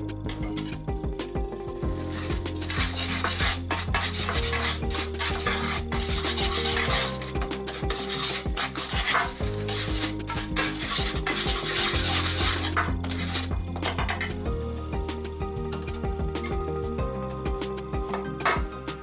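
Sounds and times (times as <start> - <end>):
background music with held notes: 0.0 - 19.0
dry rubbing and scraping: 0.2 - 14.5.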